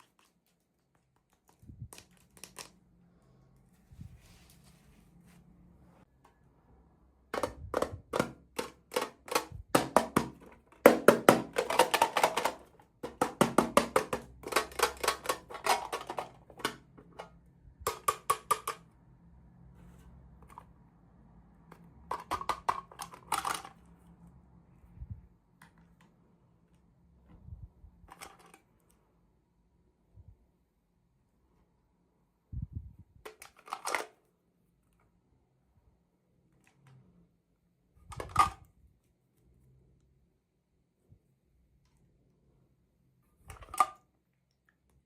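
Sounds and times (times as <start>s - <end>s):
packaging clicks and rattles: 0.0s - 2.8s, 7.4s - 18.8s, 22.0s - 23.9s.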